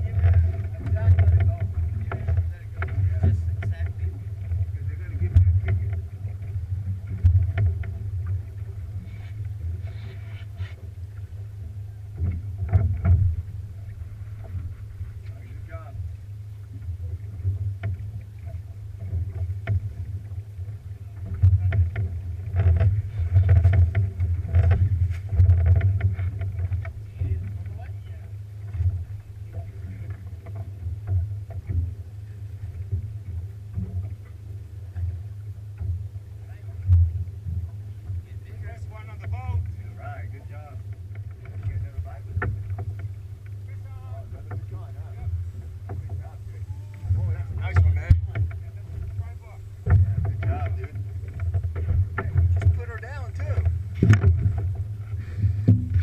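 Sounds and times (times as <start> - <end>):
low rumble aboard boat: 0.0 - 56.0
short knocks: 40.8 - 56.0
knocks: 55.4 - 56.0.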